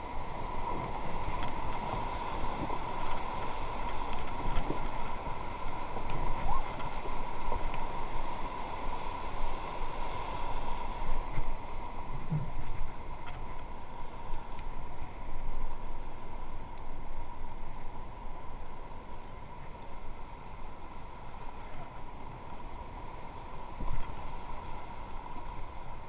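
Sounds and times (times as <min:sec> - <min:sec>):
wind buffeting microphone: 0:00.0 - 0:18.8
river water rushing: 0:00.0 - 0:26.0.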